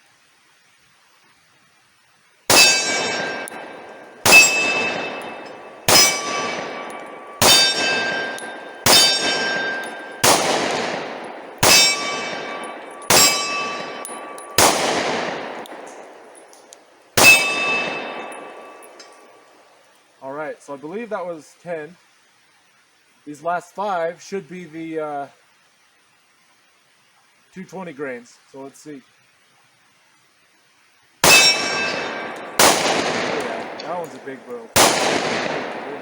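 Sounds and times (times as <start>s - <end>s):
pistol shots with ringing: 2.5s - 16.6s, 17.2s - 19.4s, 31.2s - 36.0s.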